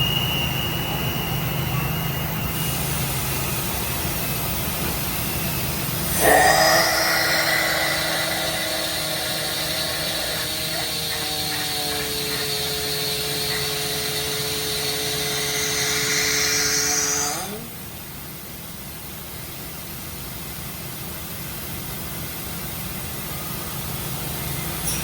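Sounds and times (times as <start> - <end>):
machine whine with held tones: 0.0 - 17.9, 23.1 - 25.0
high hiss: 5.8 - 17.3.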